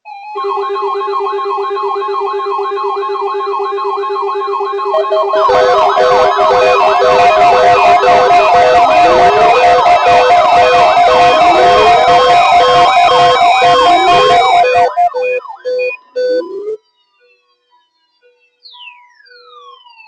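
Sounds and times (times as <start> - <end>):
electronic siren and alarm tones: 0.0 - 20.0
short beeps: 4.9 - 16.8.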